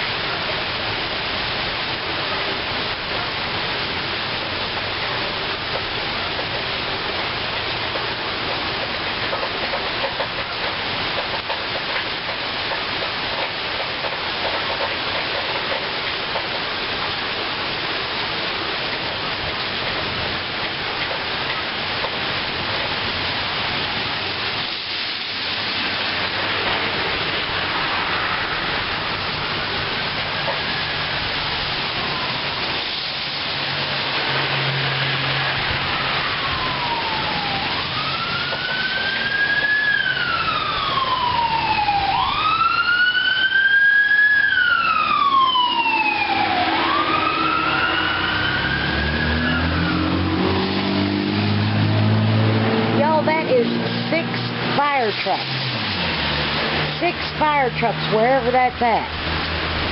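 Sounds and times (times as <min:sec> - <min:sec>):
heavy rain: 0:00.0 - 0:59.9
sirens wailing: 0:25.4 - 0:59.9.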